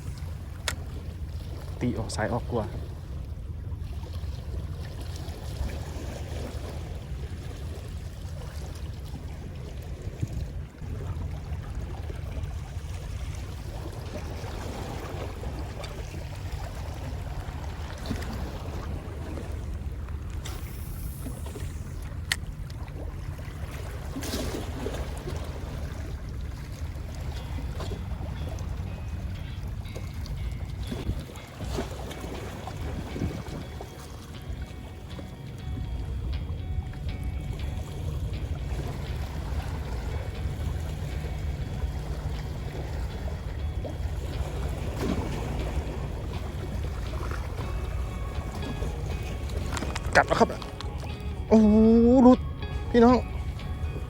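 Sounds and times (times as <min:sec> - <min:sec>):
wind rumble on microphone: 0:00.0 - 0:02.0, 0:02.7 - 0:54.0
sea water washing against rocks: 0:38.3 - 0:51.4.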